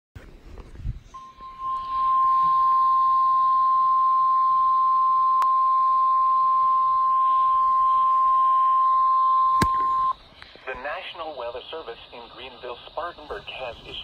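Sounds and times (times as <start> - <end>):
steady alarm tone: 1.2 - 10.2.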